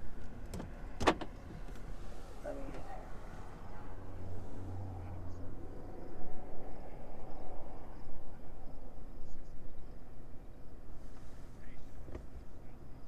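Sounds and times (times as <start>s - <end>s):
rough outdoor noise: 0.0s - 13.0s
faint insect chirps: 2.2s - 13.0s.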